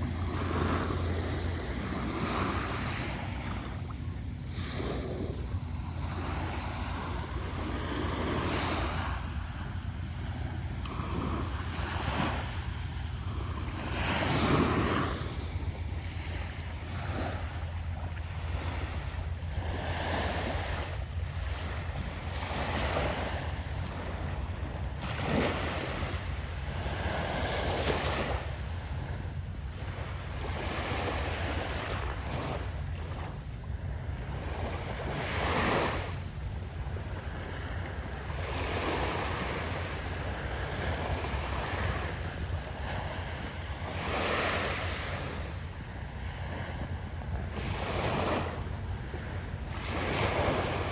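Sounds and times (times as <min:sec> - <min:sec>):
waves breaking on beach: 0:00.0 - 0:50.9
wind rumble on microphone: 0:00.0 - 0:50.9.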